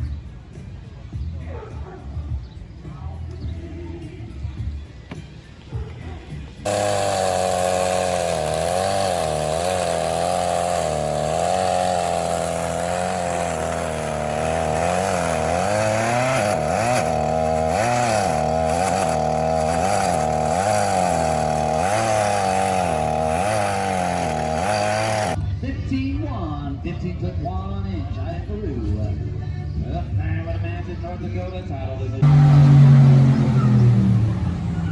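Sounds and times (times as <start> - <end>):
chainsaw cutting wood: 6.6 - 25.4, 32.2 - 33.3.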